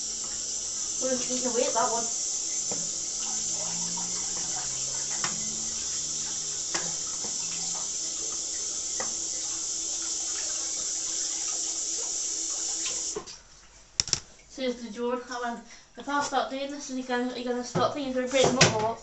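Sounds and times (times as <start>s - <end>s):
tap running into a sink: 0.0s - 13.4s, 14.0s - 14.3s.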